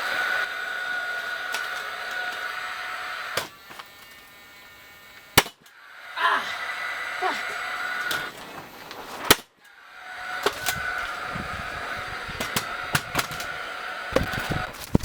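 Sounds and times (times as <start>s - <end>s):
loud crack: 12.0s - 15.0s.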